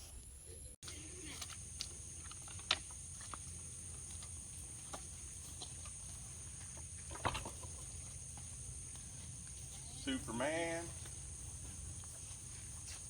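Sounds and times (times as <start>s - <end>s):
chickens clucking: 5.0s - 10.6s.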